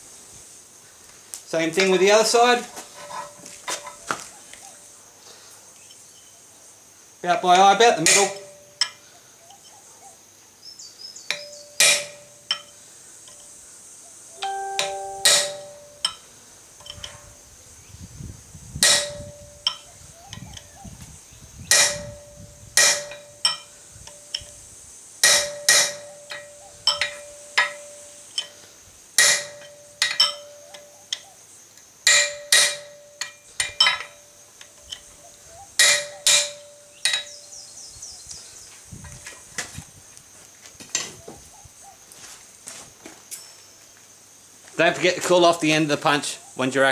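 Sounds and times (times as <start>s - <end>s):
hammer striking hot metal on anvil: 11.3s - 12.7s, 14.4s - 16.2s, 18.8s - 19.8s, 21.7s - 22.1s, 22.8s - 23.6s, 25.2s - 27.9s, 29.2s - 30.5s, 32.1s - 34.0s.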